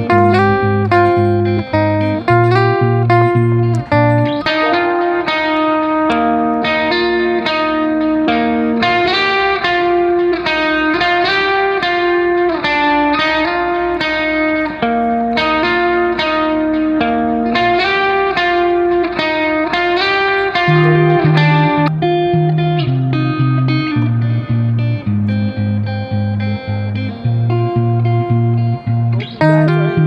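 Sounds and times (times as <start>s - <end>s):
guitar picking a melody: 0.0s - 30.0s.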